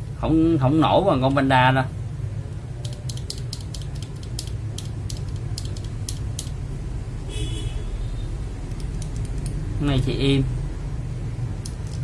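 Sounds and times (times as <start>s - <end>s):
steady low hum: 0.0s - 12.0s
keyboard switches clicking: 2.8s - 6.6s, 8.7s - 9.6s, 11.6s - 12.0s.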